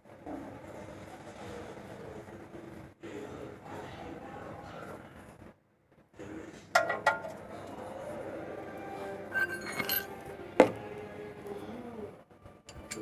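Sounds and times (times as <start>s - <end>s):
metal tools clinking: 9.3s - 10.2s, 12.7s - 13.0s.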